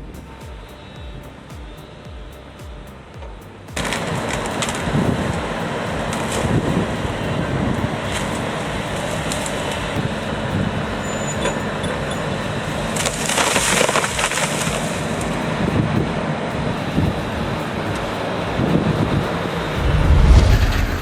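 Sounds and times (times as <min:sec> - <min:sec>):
heavy wood-processing machinery: 0:03.8 - 0:18.8
wood crunching and splintering: 0:12.9 - 0:15.4.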